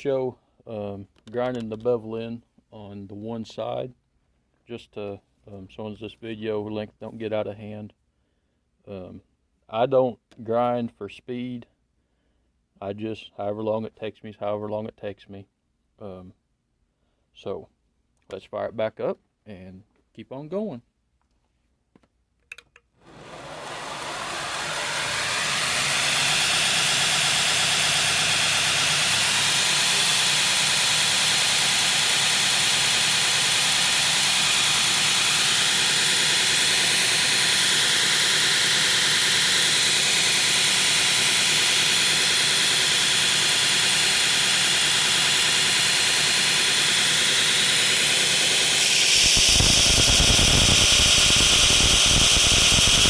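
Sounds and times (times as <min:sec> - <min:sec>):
belt grinder running: 0:23.1 - 0:53.0
blade grinding on belt: 0:23.1 - 0:53.0.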